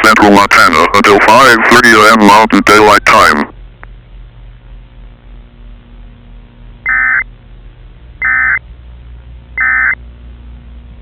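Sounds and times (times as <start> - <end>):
harsh digital tone bursts: 6.8 - 7.2, 8.2 - 8.6, 9.6 - 10.0.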